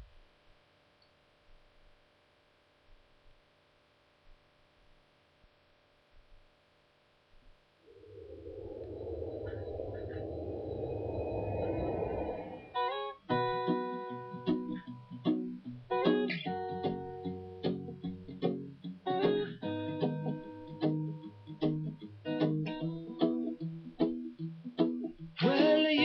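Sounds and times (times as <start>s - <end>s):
acoustic guitar strumming chords: 13.3s - 26.0s.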